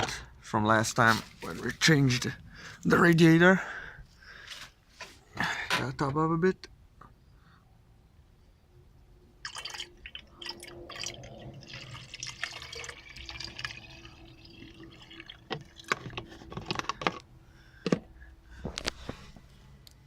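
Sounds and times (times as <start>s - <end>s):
liquid pouring and splashing: 9.4s - 16.5s.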